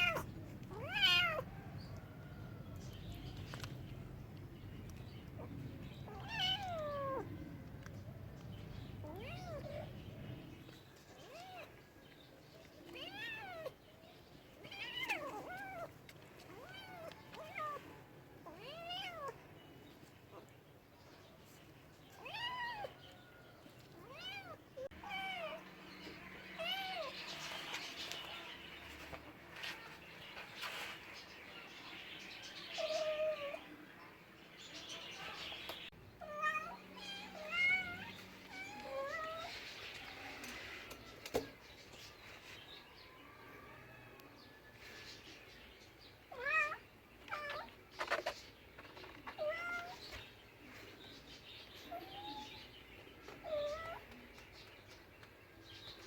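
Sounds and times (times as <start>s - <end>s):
cat meowing: 0.0s - 1.5s, 6.0s - 7.3s, 9.0s - 9.9s, 18.5s - 19.4s.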